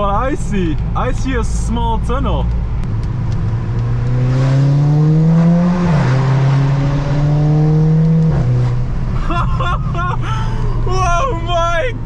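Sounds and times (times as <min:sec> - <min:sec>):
car engine accelerating: 0:02.0 - 0:09.2.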